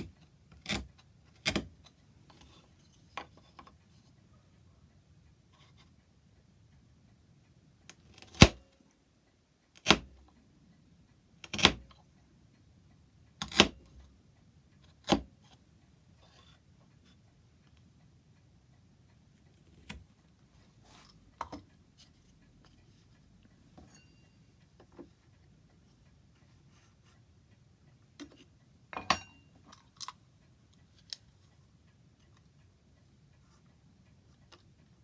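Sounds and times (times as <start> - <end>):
mallet striking chisel: 29.0 - 29.4.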